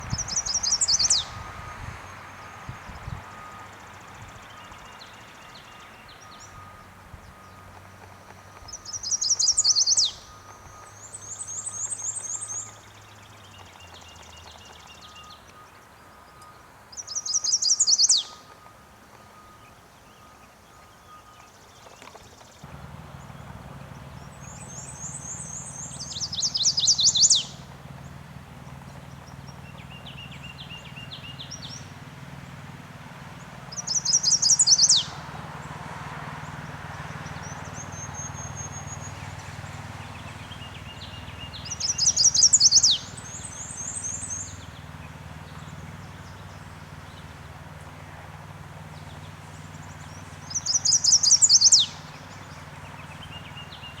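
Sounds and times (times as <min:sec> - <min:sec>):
other birds singing: 0:00.0 - 0:35.8, 0:36.4 - 0:54.0
warbler singing: 0:00.0 - 0:35.8, 0:36.4 - 0:54.0
low steady hum: 0:22.6 - 0:32.8.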